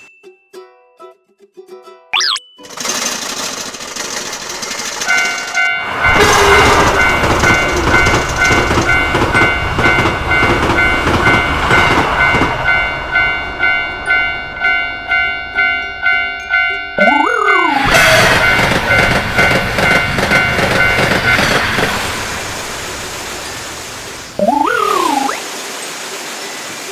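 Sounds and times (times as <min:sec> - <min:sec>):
train rumbling over track: 0:02.7 - 0:24.4
railroad crossing bell ringing: 0:04.6 - 0:22.0.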